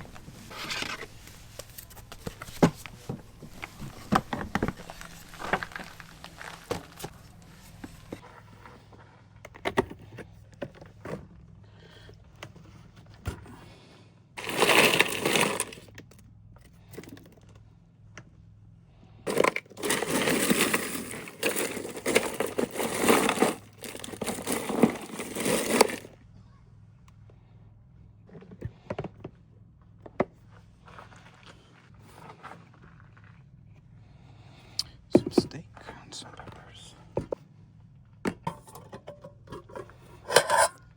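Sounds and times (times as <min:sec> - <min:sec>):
cooking gear clicks and knocks: 0:00.0 - 0:08.2, 0:14.4 - 0:16.0, 0:19.3 - 0:26.1, 0:38.3 - 0:40.8
loud packaging rustling: 0:00.0 - 0:08.2, 0:14.4 - 0:15.9, 0:19.3 - 0:26.2.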